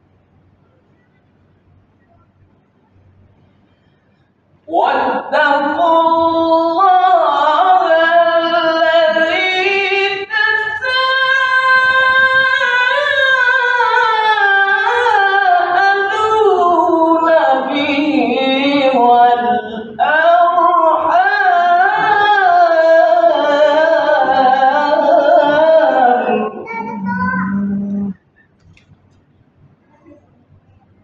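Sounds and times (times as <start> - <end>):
man chanting recitation: 4.7 - 28.2.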